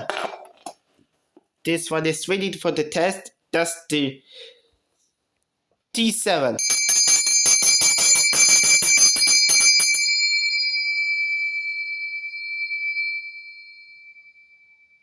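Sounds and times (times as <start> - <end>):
handbell ringing: 6.6 - 15.0.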